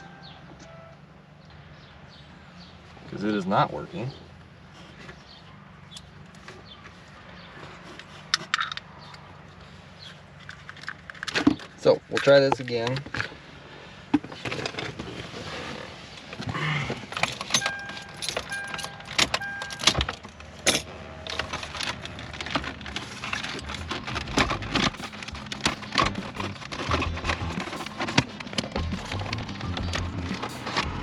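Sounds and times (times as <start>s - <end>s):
short electronic beeps: 0.0s - 1.0s, 17.6s - 20.1s
clicks and rattles of connectors: 10.4s - 13.3s.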